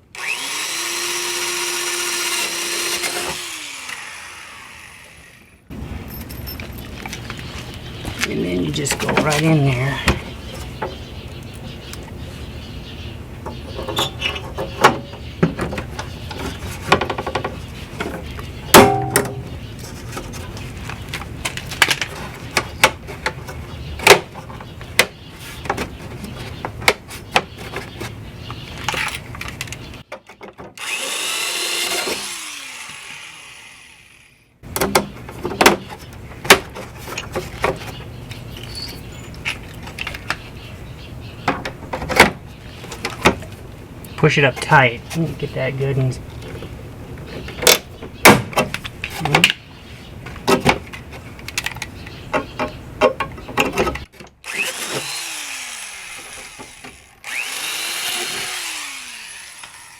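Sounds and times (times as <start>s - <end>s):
power drill running: 0.1s - 5.7s, 30.8s - 34.4s, 54.4s - 59.9s.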